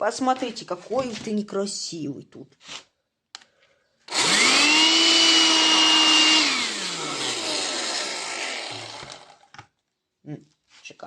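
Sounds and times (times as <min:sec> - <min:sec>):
vacuum cleaner motor whine: 0:04.1 - 0:09.4.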